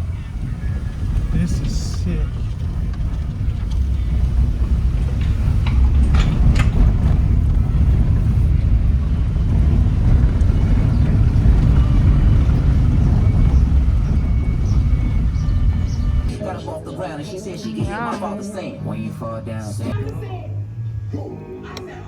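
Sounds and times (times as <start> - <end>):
wind buffeting microphone: 0.0 - 16.3
boat engine rumbling: 0.0 - 20.8.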